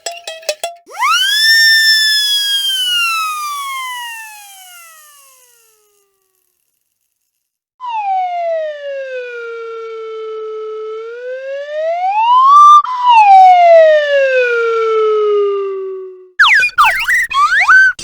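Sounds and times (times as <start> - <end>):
whooping glides: 0.9 - 5.8
buzzy siren-like sliding tone: 0.9 - 6.0.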